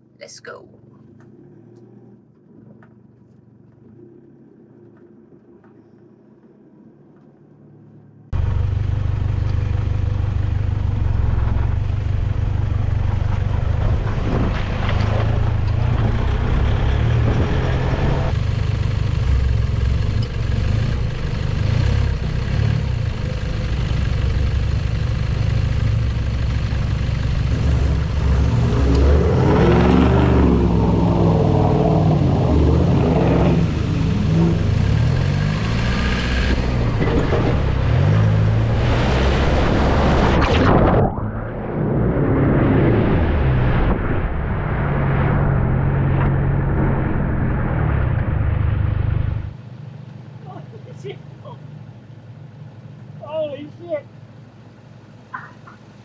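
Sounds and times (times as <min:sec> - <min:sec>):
off-road vehicle engine revving: 0:08.4 - 0:40.5.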